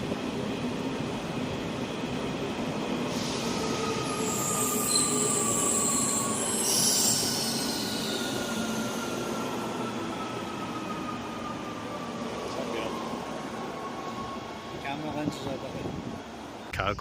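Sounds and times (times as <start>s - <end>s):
train rumbling on rails: 0.0s - 17.0s
train wheels squealing: 3.1s - 13.0s.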